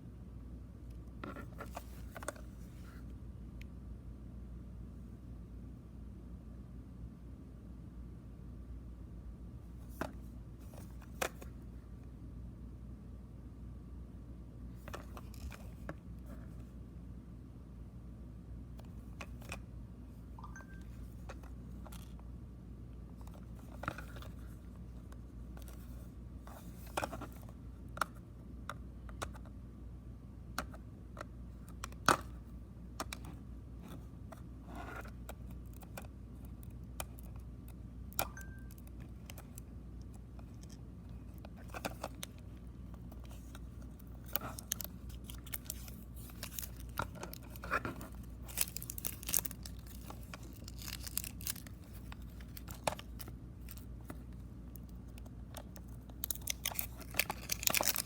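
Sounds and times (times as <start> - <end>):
plastic packaging crinkling: 43.2 - 58.0.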